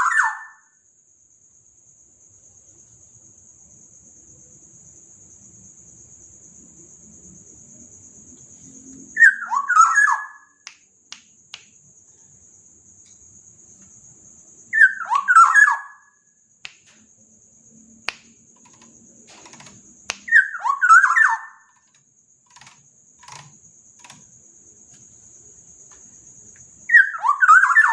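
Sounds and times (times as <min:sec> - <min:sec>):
high-pitched insect buzz: 0:05.1 - 0:27.9
bird singing fluty whistles: 0:09.1 - 0:10.6, 0:14.7 - 0:16.2, 0:20.2 - 0:21.6, 0:26.9 - 0:27.9
faint clicks: 0:18.1 - 0:20.3, 0:21.8 - 0:24.3.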